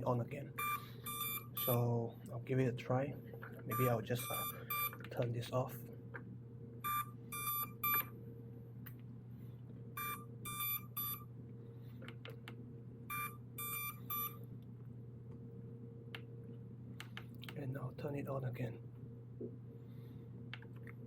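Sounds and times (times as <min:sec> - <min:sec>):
steady low hum: 0:00.0 - 0:21.0
drone short high beeps: 0:10.0 - 0:11.2, 0:13.1 - 0:14.4.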